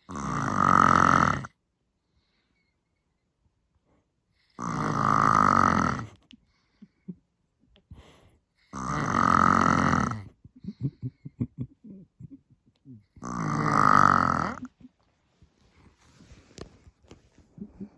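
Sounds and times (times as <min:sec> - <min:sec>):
woman snoring loudly: 0:00.0 - 0:01.5, 0:04.6 - 0:06.1, 0:08.7 - 0:10.2, 0:13.2 - 0:14.7
short soft sleep sounds: 0:13.2 - 0:17.9.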